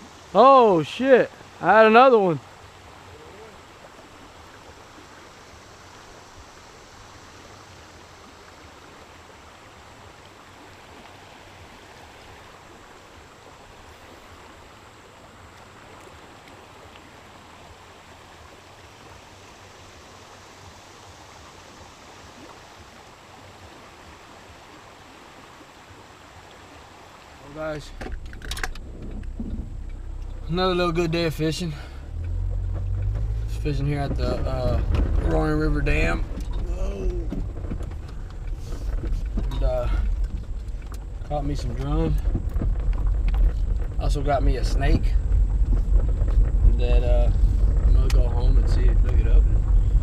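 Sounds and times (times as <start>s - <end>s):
water rushing at a dam: 0.0s - 28.1s.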